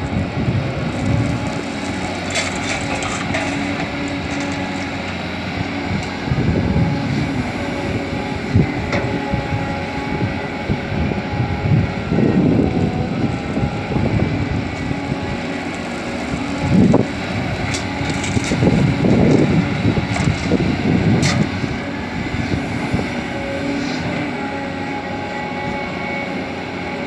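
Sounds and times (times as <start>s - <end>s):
wind on microphone: 0.0s - 26.2s
heavy diesel machinery running: 0.0s - 27.0s.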